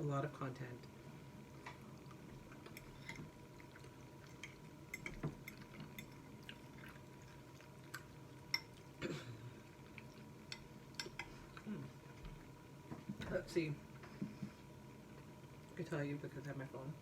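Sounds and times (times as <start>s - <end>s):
person chewing wetly: 1.5s - 9.0s, 9.6s - 12.6s.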